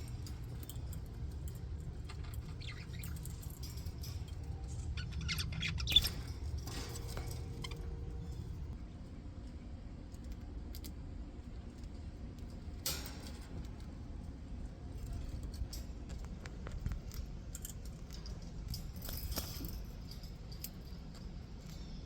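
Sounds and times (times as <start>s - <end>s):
low steady hum: 0.0s - 22.0s
budgies chirping and chattering: 2.1s - 8.5s.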